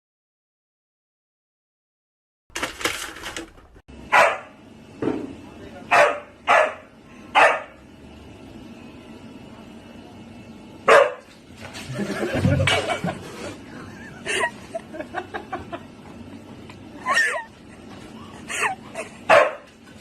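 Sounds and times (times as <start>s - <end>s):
dog barking: 4.1s - 4.6s, 5.9s - 7.8s, 10.9s - 11.3s, 19.3s - 19.7s.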